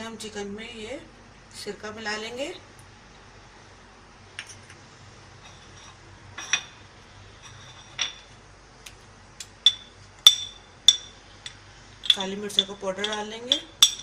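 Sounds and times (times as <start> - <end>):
spoon clinking against bowl: 9.7 - 14.0.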